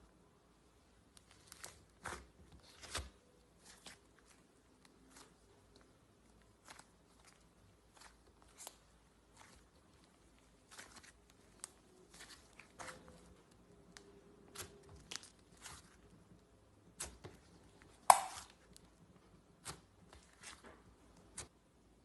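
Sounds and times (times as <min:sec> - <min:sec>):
slime crunchy clicks: 0:18.1 - 0:18.5.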